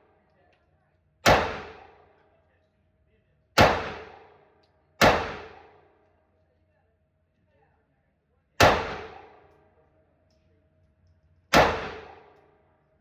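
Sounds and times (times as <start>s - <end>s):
pistol shots with echo: 1.2s - 2.1s, 3.6s - 5.9s, 8.6s - 9.5s, 11.5s - 12.6s.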